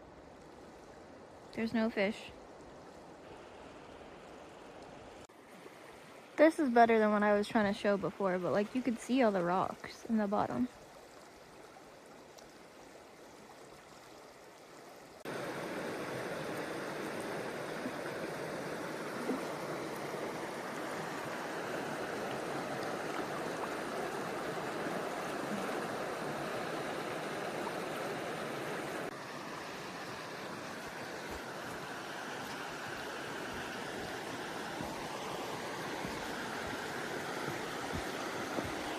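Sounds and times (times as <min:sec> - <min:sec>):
flowing river water: 0:00.0 - 0:38.9.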